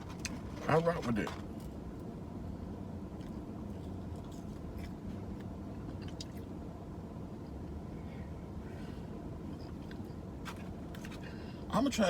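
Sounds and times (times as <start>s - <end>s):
chewing crispy food: 3.1s - 6.5s.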